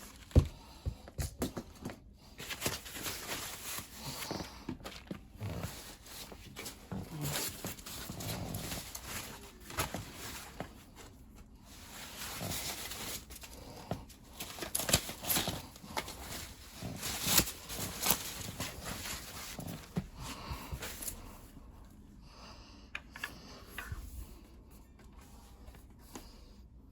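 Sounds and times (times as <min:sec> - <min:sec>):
rustling of packing material: 0:00.0 - 0:00.9, 0:01.8 - 0:21.7
knocks of unpacking: 0:12.1 - 0:21.1.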